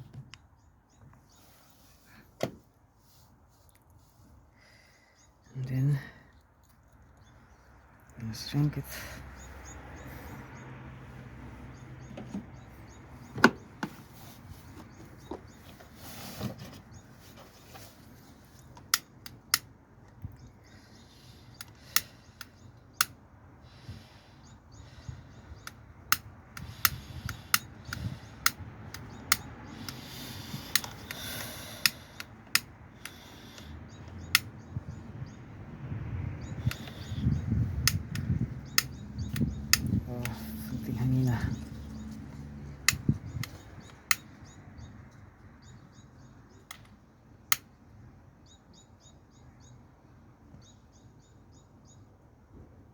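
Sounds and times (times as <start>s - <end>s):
sharp clicks and light knocks: 12.0s - 12.6s, 41.5s - 44.4s, 46.5s - 47.8s.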